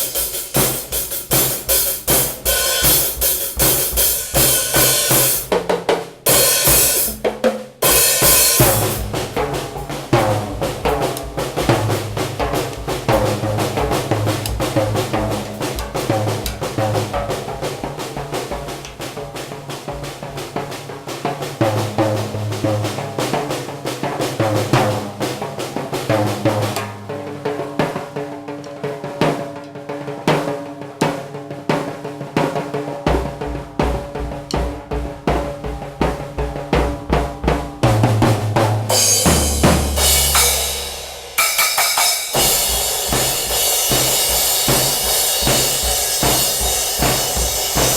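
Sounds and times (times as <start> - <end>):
acoustic drum kit playing: 0.0 - 47.9
cymbal crashes: 38.9 - 47.9.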